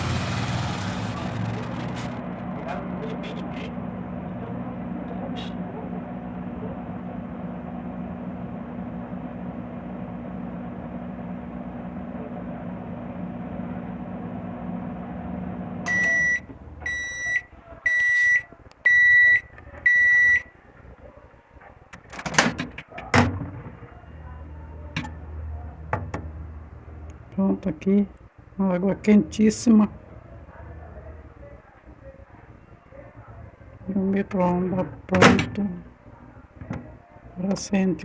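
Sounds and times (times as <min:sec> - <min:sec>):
microwave oven humming: 0:00.0 - 0:21.6
microwave beeping: 0:15.9 - 0:20.5.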